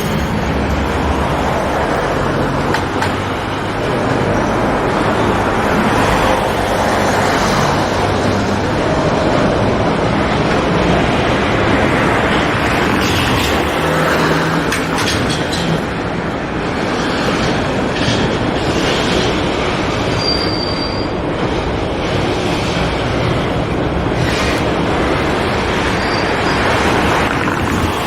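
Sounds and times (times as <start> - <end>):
train clicks: 0.0 - 20.2, 21.2 - 28.0
freight train rumbling: 0.0 - 28.0
wheel squeal: 20.1 - 21.2, 25.8 - 28.0.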